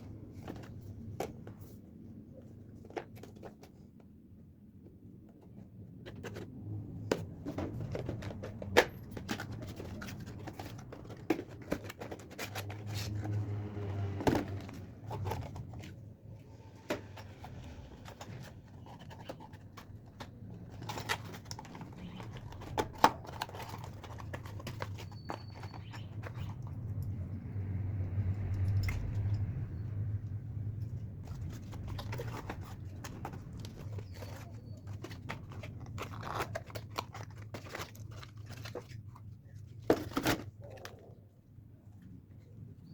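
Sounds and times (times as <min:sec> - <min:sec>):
packaging scraping and rustling: 0:05.6 - 0:27.3, 0:30.6 - 0:41.1.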